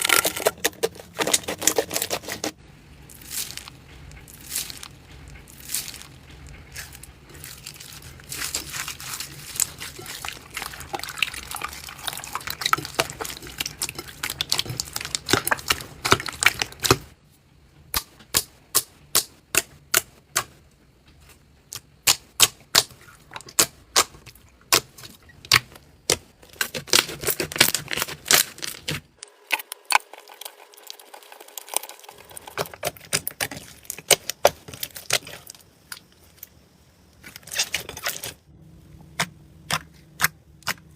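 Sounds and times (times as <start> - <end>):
slime crackling and popping: 0.0 - 2.5, 3.1 - 17.1, 22.0 - 36.0.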